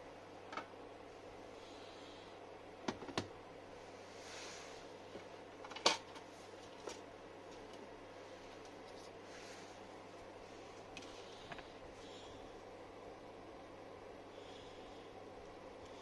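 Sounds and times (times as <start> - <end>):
faint steady hum: 0.0 - 16.0
clicks and knocks of tools: 5.2 - 7.8.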